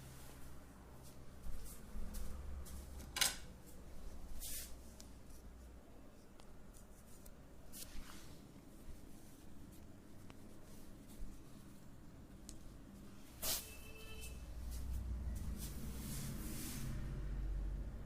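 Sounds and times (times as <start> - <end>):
hands rubbing swishes: 4.3 - 5.6.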